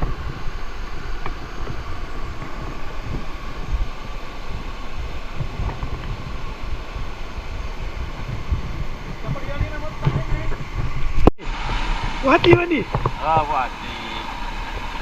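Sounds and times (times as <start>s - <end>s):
waterfall rushing: 0.0s - 15.0s
wind buffeting microphone: 0.0s - 15.0s.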